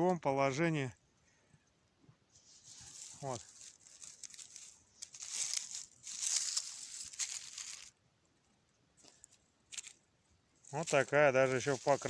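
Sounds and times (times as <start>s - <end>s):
soil rustling and scraping: 2.3s - 8.0s, 9.0s - 12.0s.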